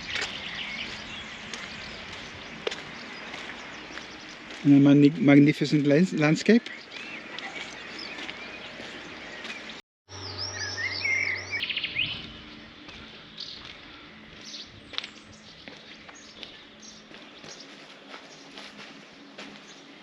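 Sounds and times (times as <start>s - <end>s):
songbirds chirping and singing: 0.0s - 20.0s
bird trill: 6.6s - 13.7s.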